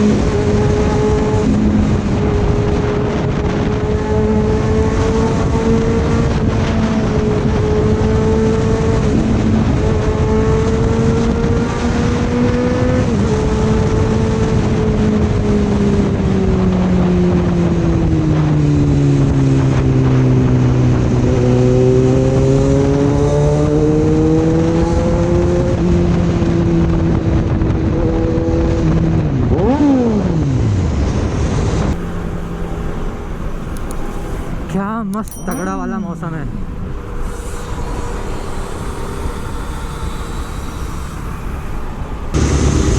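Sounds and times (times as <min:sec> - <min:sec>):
motorcycle engine running: 0:32.0 - 0:35.6, 0:36.6 - 0:42.9.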